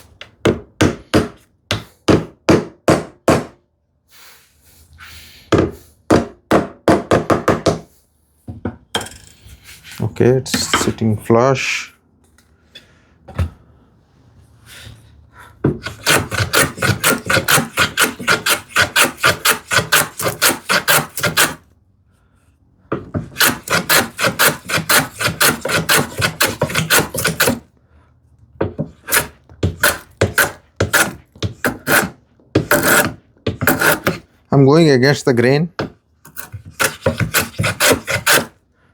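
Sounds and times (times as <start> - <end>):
hand rasp scraping wood: 15.8 - 21.6, 23.2 - 27.6, 28.9 - 34.3, 36.3 - 38.6.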